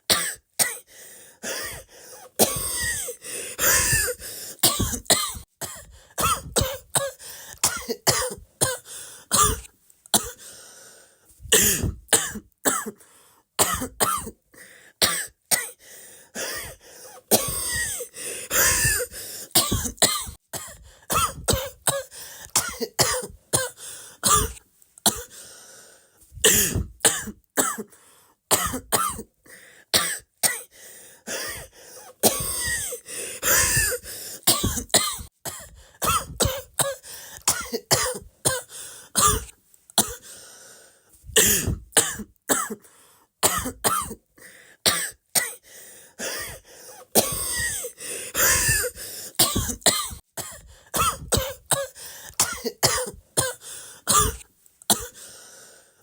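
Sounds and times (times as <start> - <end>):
person coughing: 0.1 - 10.5, 11.5 - 13.0, 13.6 - 14.4, 16.4 - 25.4, 26.4 - 27.9, 28.5 - 29.3, 31.3 - 40.3, 41.3 - 42.8, 43.4 - 44.2, 46.2 - 55.2.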